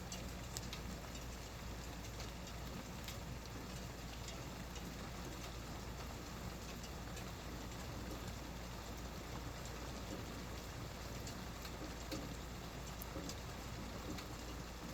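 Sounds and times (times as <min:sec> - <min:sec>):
raindrops tapping a surface: 0:00.0 - 0:14.9
steady rain falling: 0:00.0 - 0:14.9.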